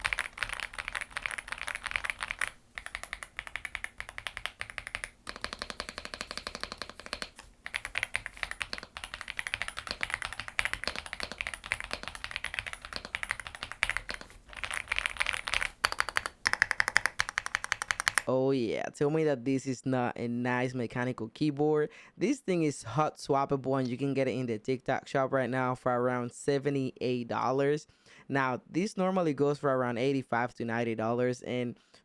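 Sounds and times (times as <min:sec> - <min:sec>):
mechanical keyboard typing: 0:00.0 - 0:18.3.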